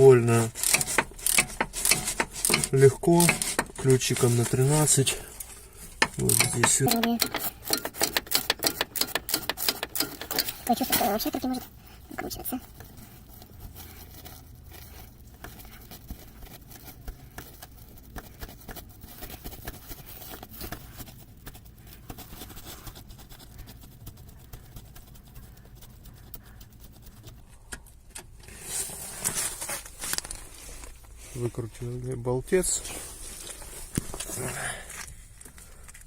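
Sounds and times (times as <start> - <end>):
scraping rustle: 0.0 - 36.0
wrench clicking: 0.5 - 3.8, 6.0 - 10.7.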